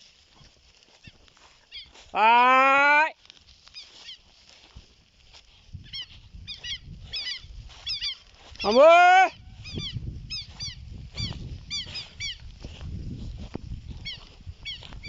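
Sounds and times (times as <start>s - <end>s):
man shouting: 2.1s - 3.2s, 8.6s - 9.5s
bird calling in high notes: 5.9s - 12.4s.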